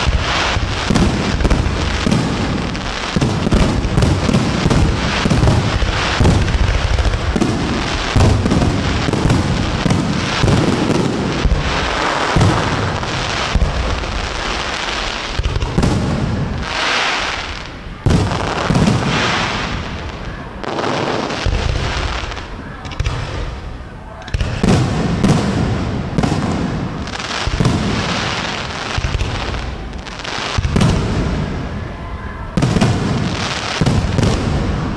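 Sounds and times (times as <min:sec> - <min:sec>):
fireworks bursts and booms: 0:00.0 - 0:34.9
fireworks crackling: 0:00.0 - 0:34.9.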